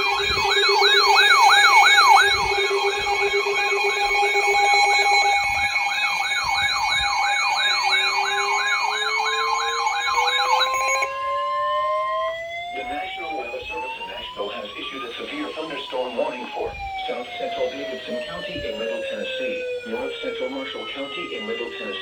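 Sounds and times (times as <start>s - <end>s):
steady alert tone: 0.0s - 14.0s
electronic alert siren warbling: 0.0s - 22.0s
slowly rising tone: 0.0s - 22.0s.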